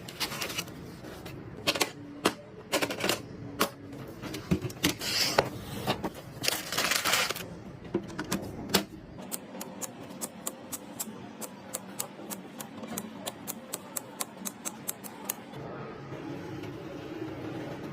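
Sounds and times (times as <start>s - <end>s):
rustling handling noise: 0.0s - 1.8s.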